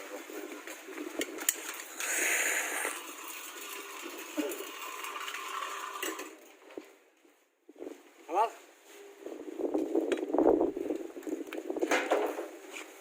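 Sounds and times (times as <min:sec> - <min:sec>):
welding charge hissing: 0:01.9 - 0:03.2.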